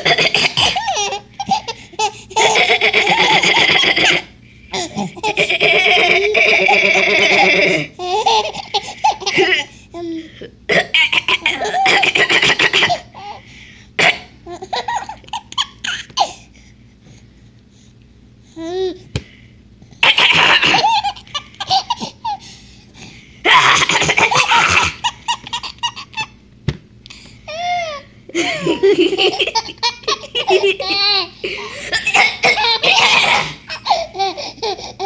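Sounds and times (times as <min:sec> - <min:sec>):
child fake coughing: 0:00.0 - 0:01.6, 0:10.7 - 0:13.2, 0:14.0 - 0:16.3, 0:20.0 - 0:22.2, 0:23.4 - 0:26.0, 0:31.6 - 0:34.1
baby laughing: 0:00.0 - 0:10.1, 0:11.0 - 0:13.4, 0:14.5 - 0:16.3, 0:20.0 - 0:22.4, 0:23.5 - 0:26.4, 0:27.5 - 0:35.0.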